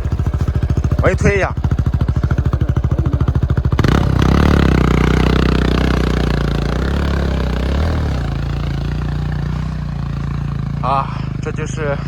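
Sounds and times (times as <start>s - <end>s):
motorcycle engine revving: 0.0s - 12.0s.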